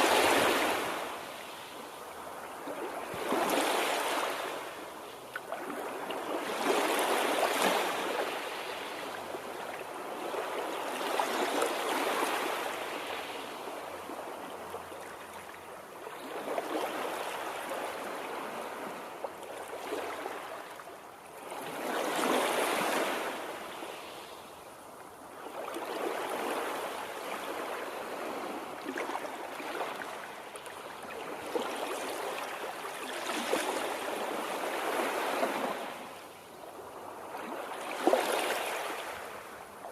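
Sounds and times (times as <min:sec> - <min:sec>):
water rushing: 0:00.0 - 0:01.2.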